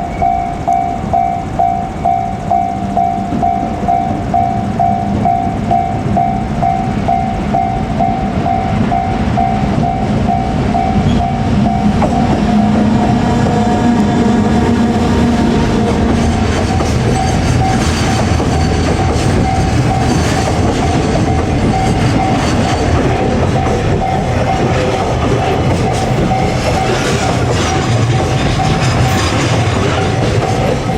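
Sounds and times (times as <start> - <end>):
level crossing bell ringing: 0.0 - 12.3
train wheels clattering: 0.0 - 30.9.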